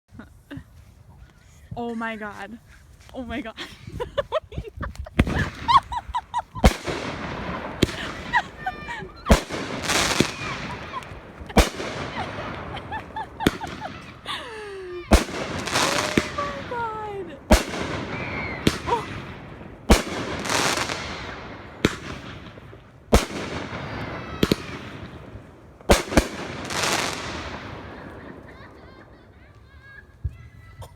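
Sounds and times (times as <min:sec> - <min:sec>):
fireworks crackling: 0:04.2 - 0:30.8
fireworks bangs: 0:05.1 - 0:30.6.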